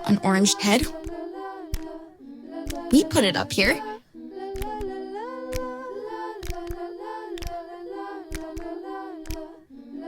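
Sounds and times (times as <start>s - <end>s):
light percussive clicks: 0.9s - 1.9s, 2.7s - 2.9s, 4.6s - 4.9s, 5.5s - 5.7s, 6.4s - 6.8s, 7.4s - 7.6s, 8.3s - 9.5s.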